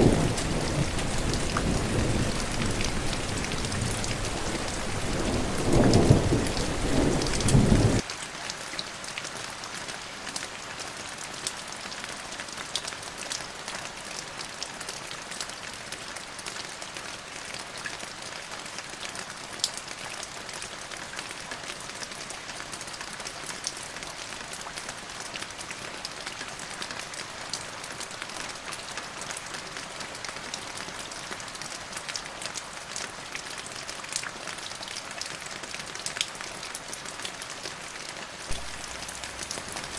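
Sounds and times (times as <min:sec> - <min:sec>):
low rumble of thunder: 0:00.0 - 0:08.0, 0:38.5 - 0:39.9
steady rain falling: 0:00.0 - 0:39.9.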